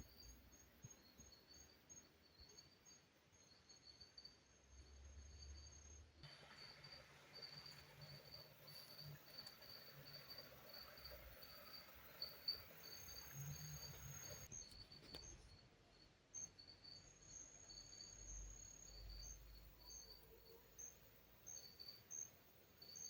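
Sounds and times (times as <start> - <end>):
high insect trill: 6.6 - 15.6, 16.3 - 23.0
insects chirping rhythmically: 6.6 - 15.6, 16.4 - 23.0.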